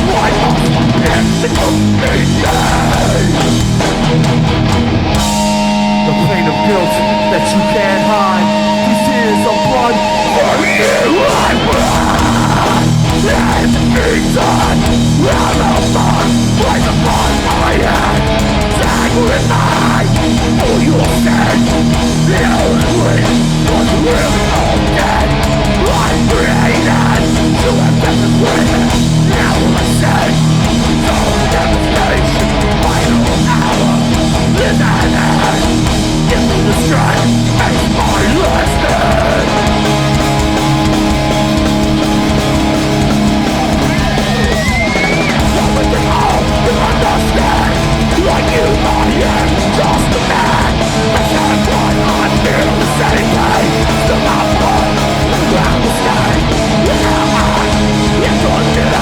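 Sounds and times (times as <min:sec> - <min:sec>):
metal band playing live: 0:00.0 - 0:59.0.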